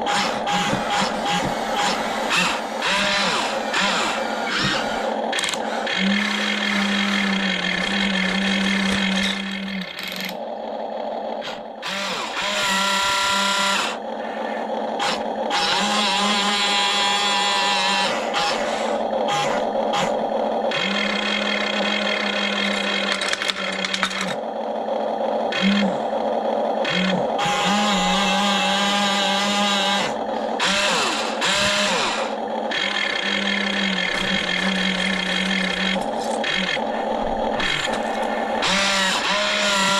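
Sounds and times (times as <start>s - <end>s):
electric motors whining: 0.0s - 39.9s.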